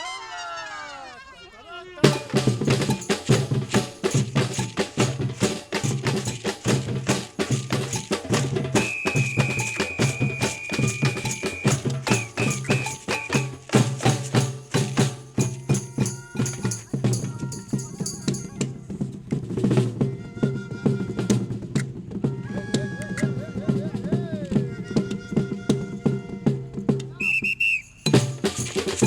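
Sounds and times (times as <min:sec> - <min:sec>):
samba percussion group: 0:02.0 - 0:29.0
whistle blasts: 0:08.7 - 0:13.8, 0:27.1 - 0:28.2.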